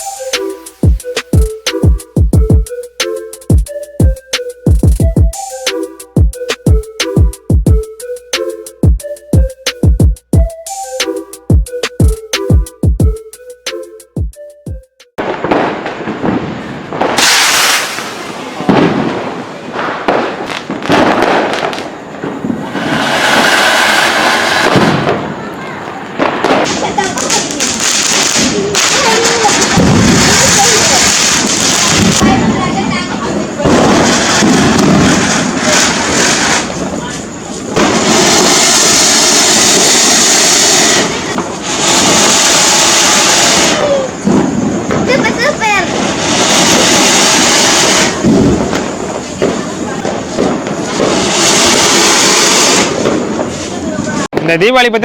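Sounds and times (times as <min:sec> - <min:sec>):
firecrackers bursting: 0:15.2 - 0:55.0.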